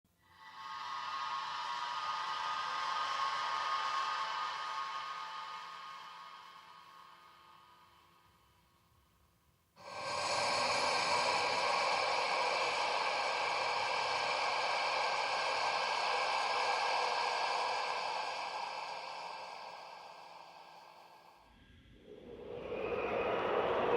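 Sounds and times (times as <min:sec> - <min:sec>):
reverberant breath gasp: 0:09.8 - 0:21.9.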